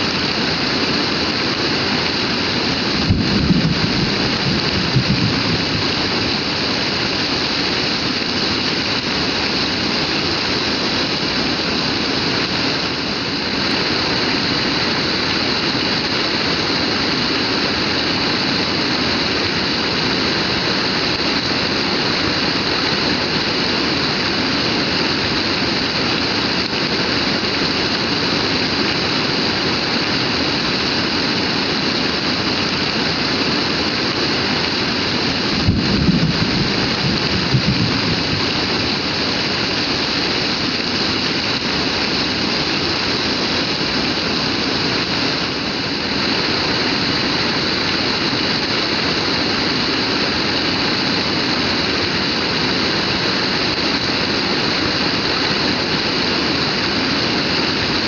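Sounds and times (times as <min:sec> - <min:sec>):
heavy rain pouring: 0:00.0 - 0:58.0
low rumble with thuds: 0:03.0 - 0:06.3, 0:35.6 - 0:39.0.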